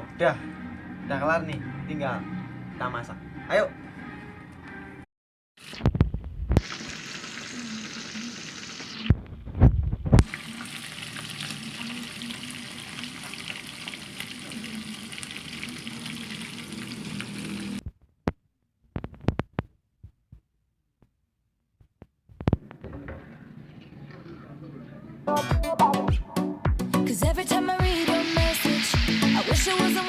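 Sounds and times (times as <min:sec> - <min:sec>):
food sizzling in a pan: 0:06.6 - 0:09.1, 0:10.2 - 0:17.8, 0:27.8 - 0:30.0.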